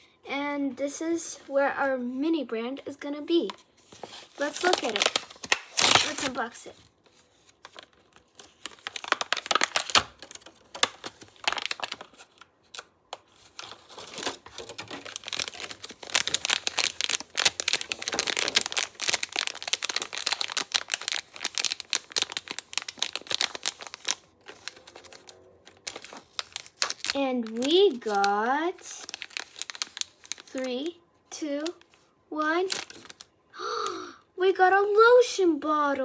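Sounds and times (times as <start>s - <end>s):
plastic packaging crinkling: 3.4s - 30.9s, 32.6s - 34.0s.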